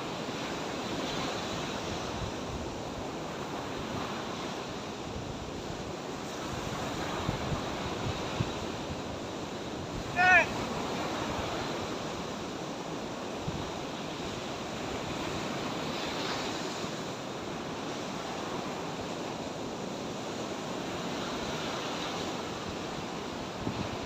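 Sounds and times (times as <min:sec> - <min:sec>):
sea surf washing ashore: 0:00.0 - 0:24.0
wind on microphone: 0:01.0 - 0:12.5, 0:20.8 - 0:24.0.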